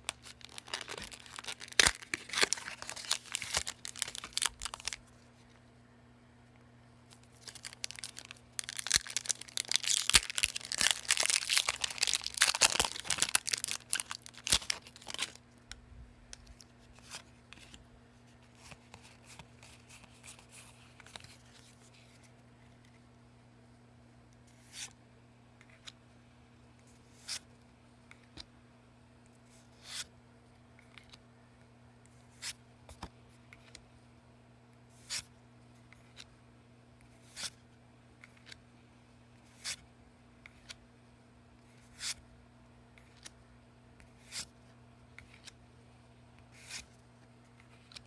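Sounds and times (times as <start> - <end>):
cards sliding with soft swish: 44.1 - 44.5, 46.5 - 46.9.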